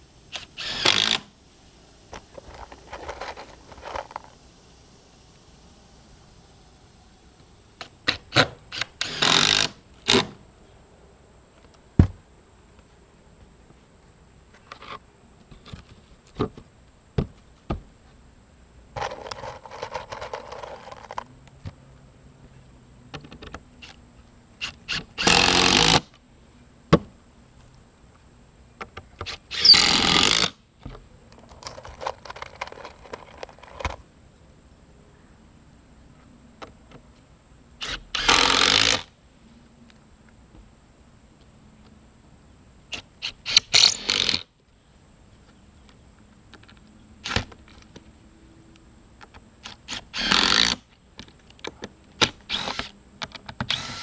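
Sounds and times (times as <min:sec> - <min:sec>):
power tool running: 0:52.5 - 0:52.9, 0:53.7 - 0:54.0.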